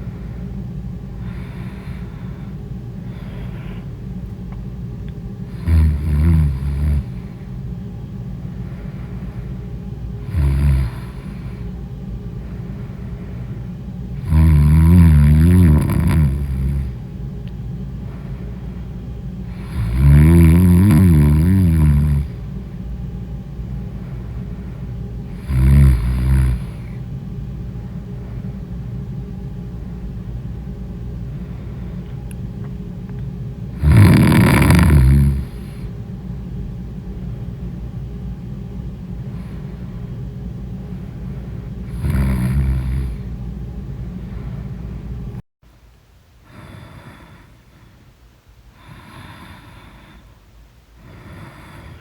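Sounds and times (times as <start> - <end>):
steady low hum: 0.0 - 52.0
woman snoring loudly: 1.2 - 2.2, 5.4 - 7.4, 10.2 - 11.7, 14.2 - 17.0, 19.4 - 22.4, 25.3 - 27.0, 33.7 - 35.9, 41.8 - 43.3, 46.5 - 47.6, 48.8 - 50.2, 51.0 - 52.0.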